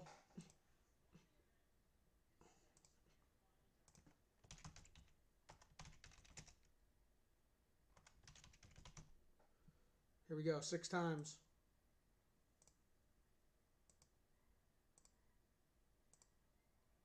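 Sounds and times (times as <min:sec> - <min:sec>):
faint typing on keyboard: 0:02.7 - 0:03.2, 0:03.8 - 0:06.8, 0:07.9 - 0:09.2, 0:12.6 - 0:12.8, 0:13.8 - 0:14.2, 0:14.9 - 0:15.3, 0:16.1 - 0:16.4.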